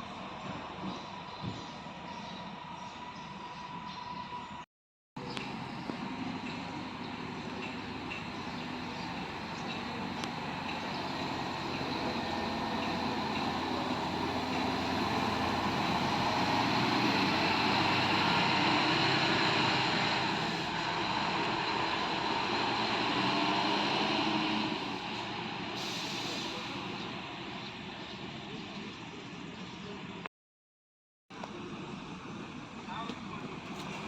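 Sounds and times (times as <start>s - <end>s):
bus driving past: 5.2s - 30.3s.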